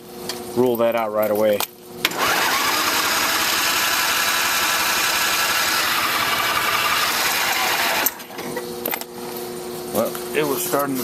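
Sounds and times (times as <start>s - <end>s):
engine cranking by electric starter: 2.0s - 8.5s.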